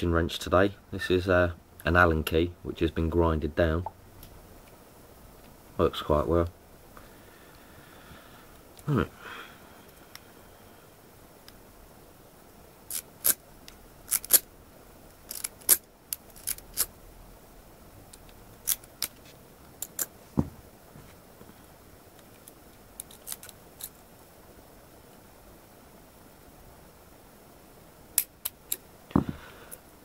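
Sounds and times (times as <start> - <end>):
dull knock: 20.4 - 20.6.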